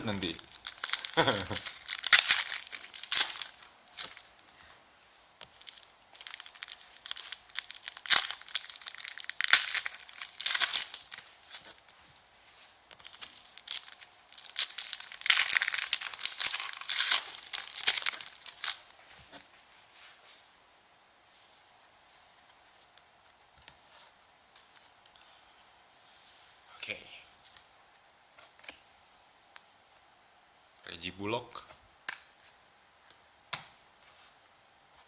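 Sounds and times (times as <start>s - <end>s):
foil wrappers tearing and crinkling: 0.0s - 4.3s, 5.6s - 12.0s, 13.0s - 18.9s.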